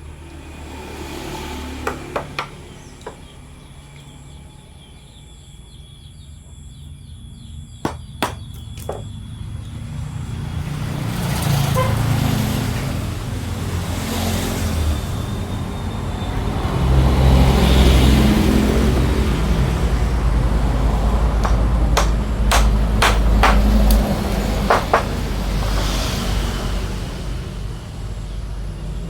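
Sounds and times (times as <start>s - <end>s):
sharp knocks: 1.9s - 3.3s, 7.9s - 9.1s, 21.4s - 26.2s.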